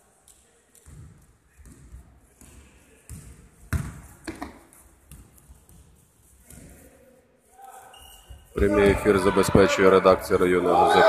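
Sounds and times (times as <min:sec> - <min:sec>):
basketball bouncing on floor: 0:00.8 - 0:05.9.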